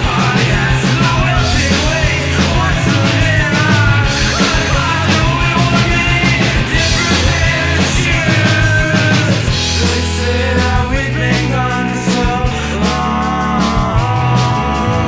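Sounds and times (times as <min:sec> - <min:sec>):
rock song with singing: 0:00.0 - 0:15.0.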